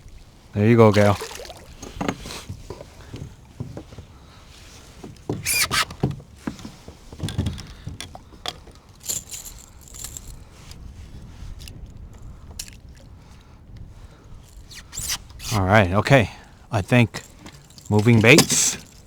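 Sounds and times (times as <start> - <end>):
fishing gear knocking and rattling: 0.9 - 4.2, 4.8 - 10.9, 11.5 - 13.4, 14.3 - 15.6, 17.1 - 19.0.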